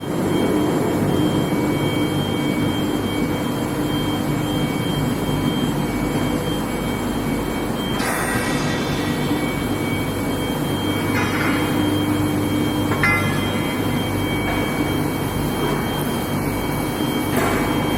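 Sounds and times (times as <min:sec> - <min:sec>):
industrial machinery roaring: 0:07.6 - 0:17.9
thin high whine: 0:07.9 - 0:17.2.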